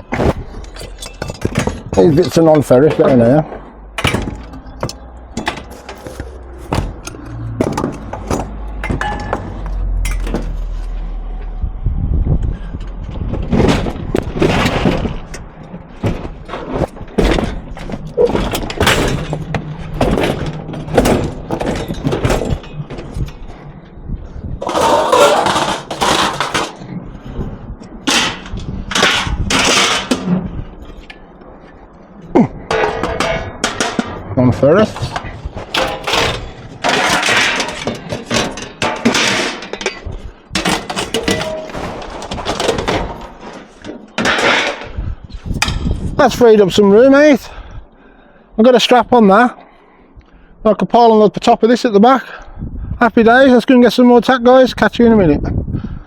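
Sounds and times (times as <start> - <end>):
scrap metal clanking: 0.1 - 11.5, 12.4 - 26.9, 28.0 - 31.8, 32.7 - 46.2
low rumble: 2.9 - 36.9.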